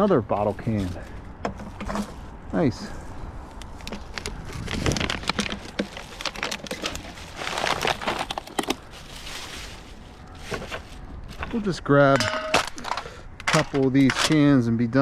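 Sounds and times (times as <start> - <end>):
plastic bottles and cans crinkling: 3.7 - 14.3.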